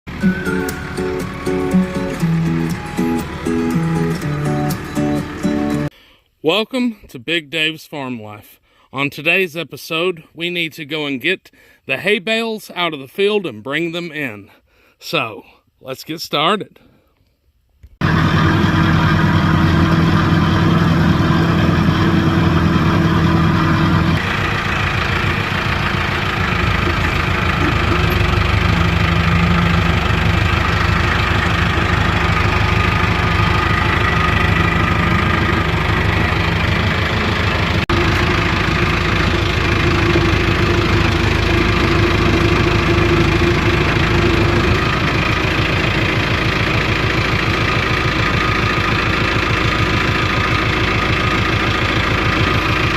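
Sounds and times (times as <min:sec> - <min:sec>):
vehicle engine running: 0:00.1 - 0:05.9, 0:18.0 - 0:52.9.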